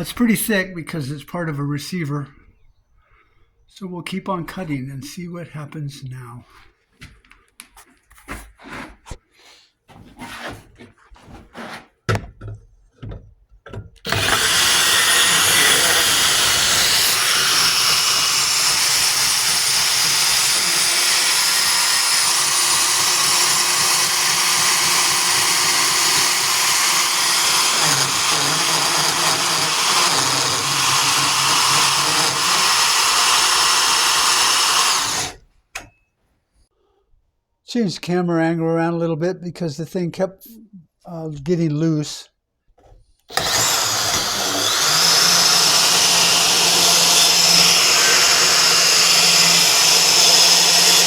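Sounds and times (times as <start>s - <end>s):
band saw cutting steel: 14.1s - 35.4s, 43.3s - 51.0s.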